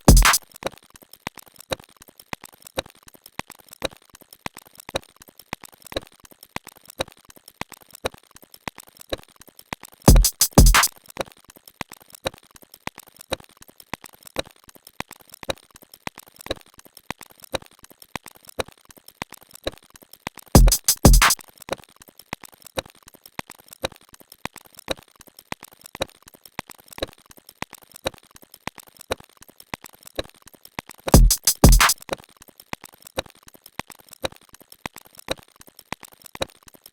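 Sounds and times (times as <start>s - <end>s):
drum machine beat: 0.0s - 0.4s, 10.1s - 10.9s, 20.6s - 21.4s, 31.2s - 32.0s
heavy bass hits: 31.2s - 31.8s.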